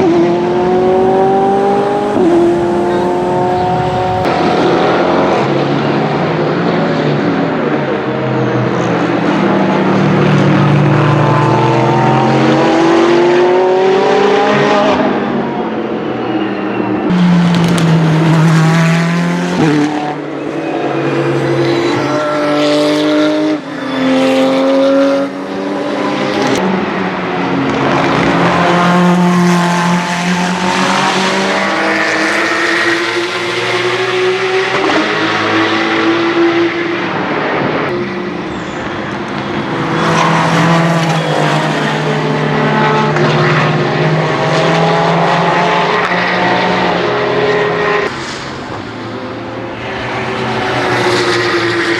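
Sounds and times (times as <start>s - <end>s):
race cars passing at full speed: 0.0s - 51.9s.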